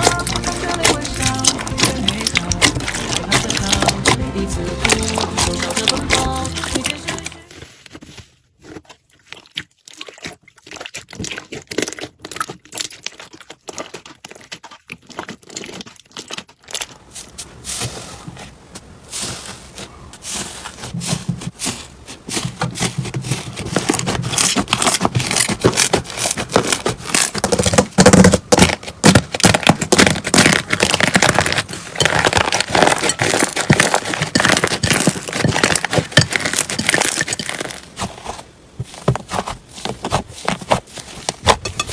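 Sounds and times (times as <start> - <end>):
slime crackling and popping: 0.0 - 7.5, 20.3 - 41.9.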